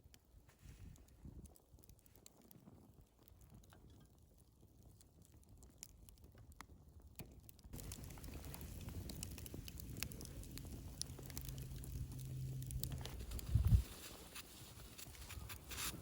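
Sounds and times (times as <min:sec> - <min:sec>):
wood fire crackling: 0:00.1 - 0:16.0
low hush: 0:07.8 - 0:16.0.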